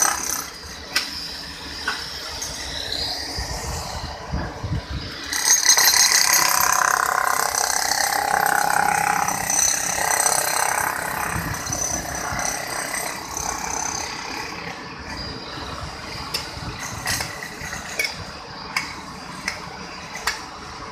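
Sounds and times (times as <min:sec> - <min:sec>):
steady machine whine: 0:00.0 - 0:20.9
construction machinery clattering: 0:05.1 - 0:20.9.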